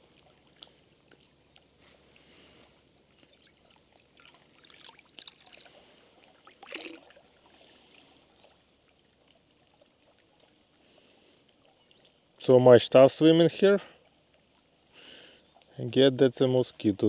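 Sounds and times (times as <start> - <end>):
water splashing into a container: 3.2 - 7.5.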